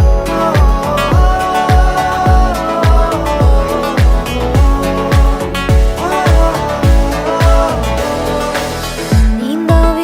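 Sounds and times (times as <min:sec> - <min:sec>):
song with deep kick drum: 0:00.0 - 0:10.0.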